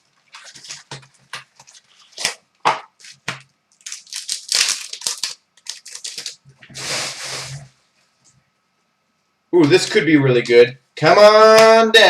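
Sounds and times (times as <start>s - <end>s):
foil wrapper tearing and crinkling: 0.3s - 2.4s, 3.0s - 6.5s.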